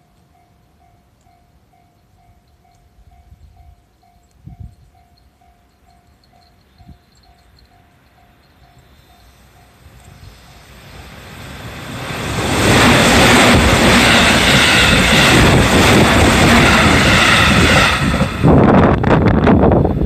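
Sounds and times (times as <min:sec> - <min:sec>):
crossing bell dinging: 0:00.0 - 0:10.9
train wheels rushing on rail: 0:06.3 - 0:20.0.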